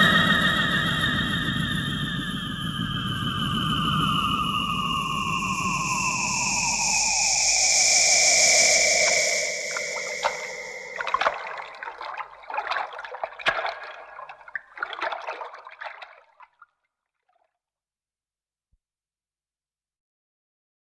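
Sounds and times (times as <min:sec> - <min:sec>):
crackling trickling noise: 0:08.7 - 0:16.6.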